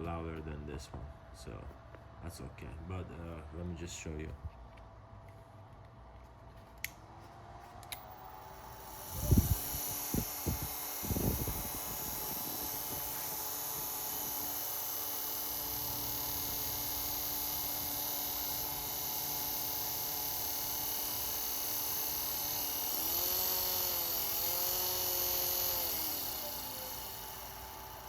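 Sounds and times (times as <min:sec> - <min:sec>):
electric fan motor humming: 0:00.0 - 0:28.0
fan rattling noise: 0:07.4 - 0:28.0.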